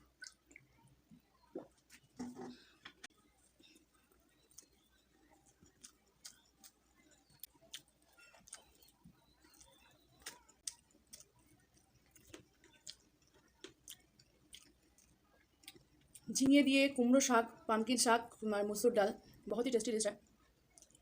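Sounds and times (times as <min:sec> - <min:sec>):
mouth clicks and smacks: 0:00.0 - 0:00.8
person chewing: 0:00.0 - 0:00.8, 0:02.8 - 0:16.3, 0:20.6 - 0:21.0.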